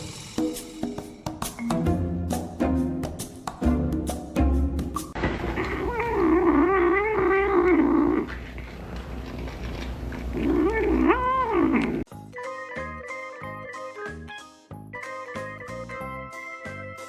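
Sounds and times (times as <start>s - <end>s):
pet animal yowling: 5.6s - 8.4s, 10.4s - 12.0s.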